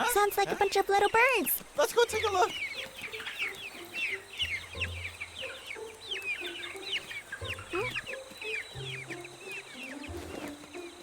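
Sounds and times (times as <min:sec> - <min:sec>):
little birds cheeping: 0:00.0 - 0:11.0
background music: 0:02.5 - 0:11.0.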